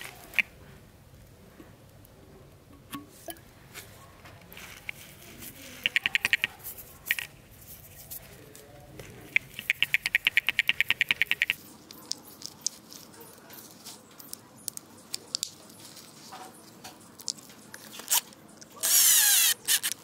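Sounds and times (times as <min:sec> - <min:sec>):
rapid mechanical clicking: 0:09.3 - 0:11.6.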